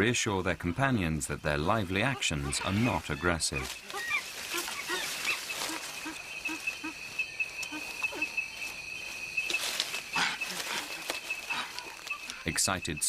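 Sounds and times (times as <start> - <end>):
young chimpanzees calling: 1.7 - 12.6
high-pitched insect buzz: 3.7 - 12.6.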